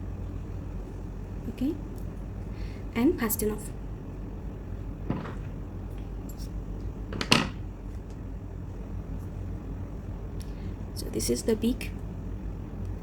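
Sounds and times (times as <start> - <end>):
handling knocks: 5.0 - 6.4, 7.1 - 7.7.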